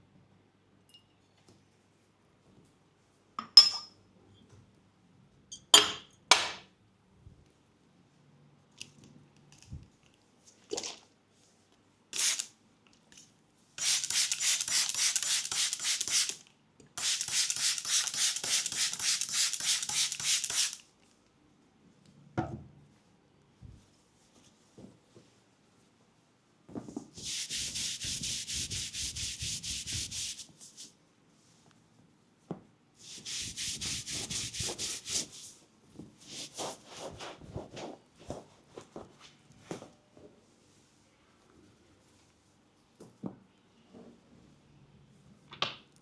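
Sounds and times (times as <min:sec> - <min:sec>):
hands rubbing briskly: 0:17.0 - 0:20.8, 0:27.2 - 0:30.9, 0:33.0 - 0:35.5, 0:36.3 - 0:37.4.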